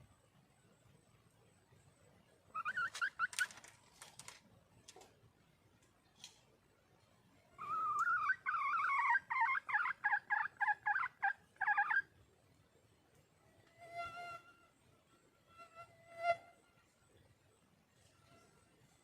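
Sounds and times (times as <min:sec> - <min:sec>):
hen cackling call: 0:07.6 - 0:12.1.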